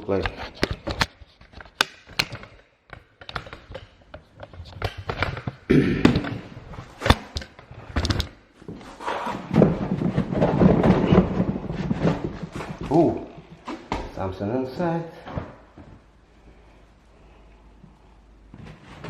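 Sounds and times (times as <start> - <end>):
plastic knocks and scraping: 0.2 - 14.2
plastic parts thudding and rubbing: 0.3 - 14.2.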